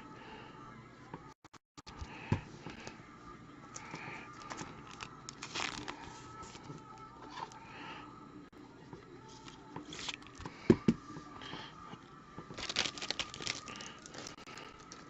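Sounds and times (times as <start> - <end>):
foil wrappers crinkling: 3.8 - 6.7, 12.5 - 15.0
cards being handled: 3.8 - 6.8.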